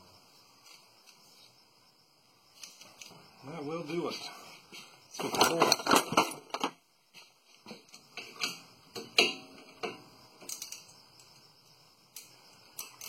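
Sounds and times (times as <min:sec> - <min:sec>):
light metallic clinks: 0:05.2 - 0:13.0.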